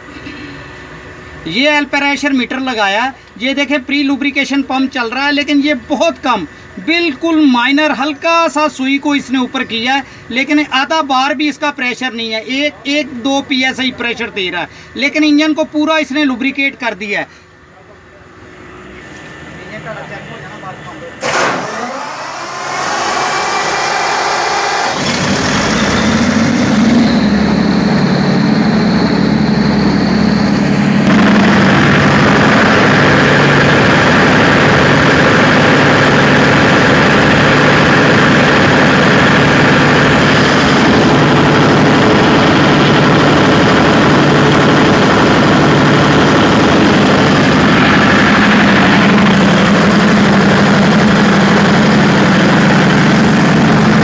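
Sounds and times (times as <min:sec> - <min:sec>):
diesel engine starting and running: 0:18.4 - 0:54.0
starter motor whirr: 0:21.2 - 0:54.0.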